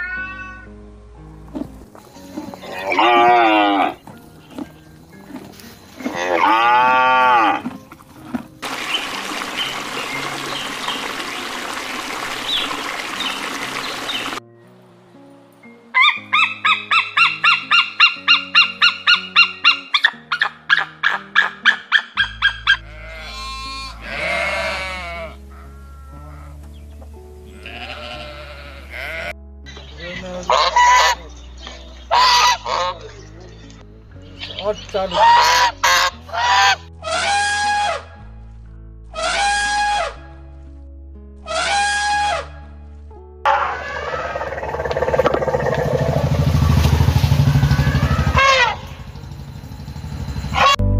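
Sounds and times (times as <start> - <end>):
faint background music: 0.0 - 44.4
geese honking: 30.3 - 31.4, 32.0 - 33.2, 34.4 - 38.0, 39.2 - 40.2, 43.5 - 49.0, 50.5 - 50.8.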